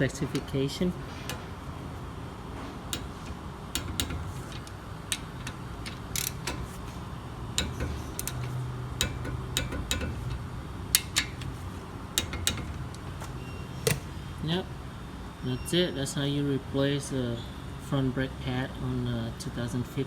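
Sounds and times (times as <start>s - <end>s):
ratcheting wrench clicking: 1.2s - 1.6s, 2.9s - 14.1s.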